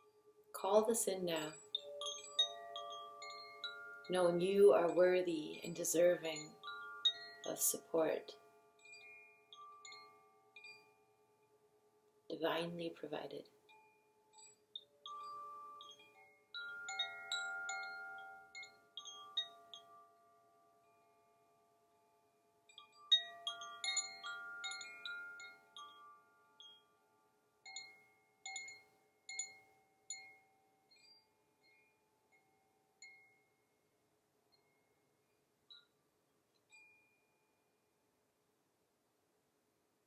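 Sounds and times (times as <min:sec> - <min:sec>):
metal chimes ringing: 0:00.0 - 0:11.2, 0:13.7 - 0:21.1, 0:22.7 - 0:27.0
faint steady hum: 0:00.0 - 0:31.0.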